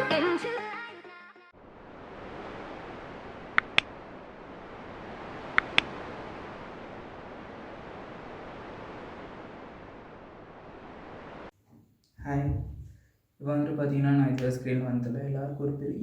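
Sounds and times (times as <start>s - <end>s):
room noise hiss: 1.6s - 16.0s
sharp clicks: 3.6s - 3.9s.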